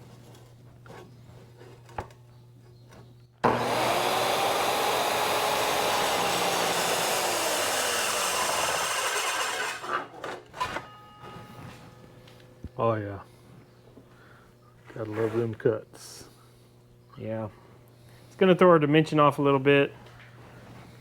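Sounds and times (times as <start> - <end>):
circular saw cutting metal: 3.5 - 10.2.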